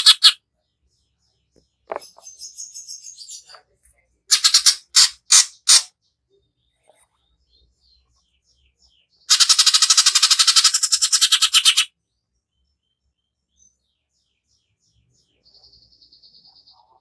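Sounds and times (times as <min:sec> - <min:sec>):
bird fast trill: 0:00.0 - 0:00.4, 0:09.3 - 0:11.9
bird harsh rattling call: 0:00.0 - 0:00.4, 0:04.3 - 0:05.9, 0:09.3 - 0:11.9.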